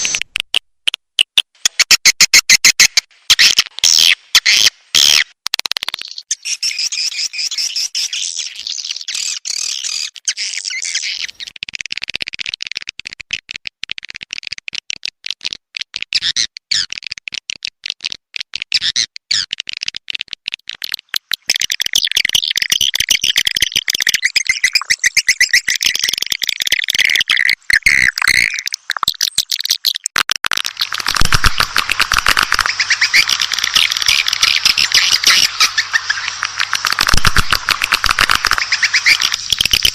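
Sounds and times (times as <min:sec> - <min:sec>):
swiftlets chirping and twittering: 0:06.0 - 0:11.5, 0:20.8 - 0:39.9.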